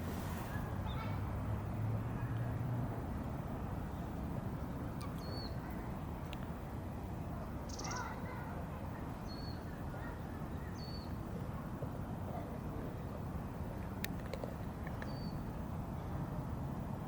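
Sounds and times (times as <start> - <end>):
low outdoor background rumble: 0.0 - 17.0
small bird chirping: 7.7 - 8.2.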